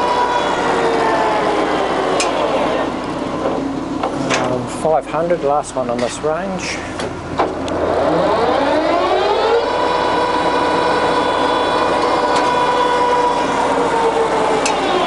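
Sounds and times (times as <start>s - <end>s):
lathe whine: 0.0s - 4.2s, 6.6s - 15.0s.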